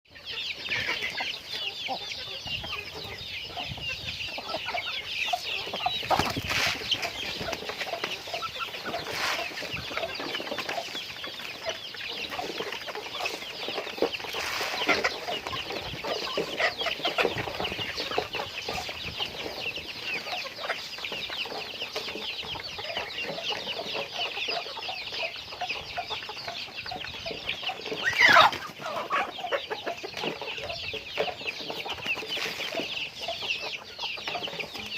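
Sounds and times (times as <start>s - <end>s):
chickens clucking: 0.1s - 34.9s.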